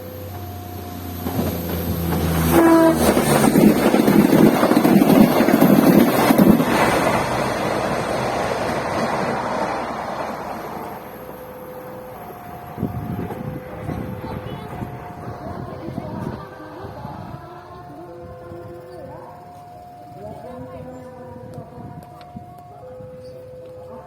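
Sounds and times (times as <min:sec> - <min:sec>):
train passing at speed: 0:00.0 - 0:23.1
train horn blast: 0:02.2 - 0:03.6.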